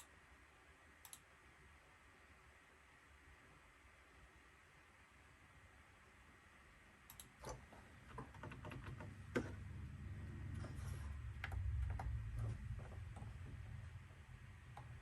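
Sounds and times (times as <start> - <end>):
buttons clicking: 7.1 - 7.5
low rumble: 9.5 - 15.0.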